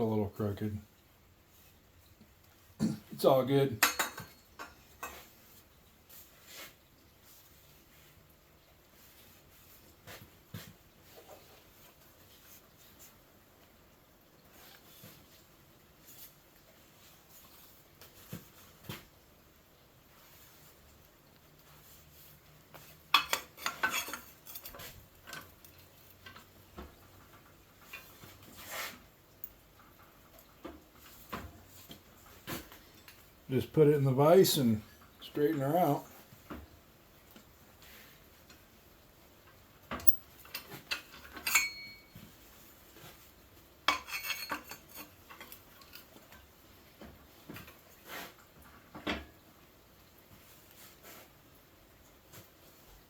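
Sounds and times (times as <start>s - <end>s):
sheet steel pieces clinking: 23.2s - 25.5s, 40.0s - 42.2s, 43.9s - 46.1s.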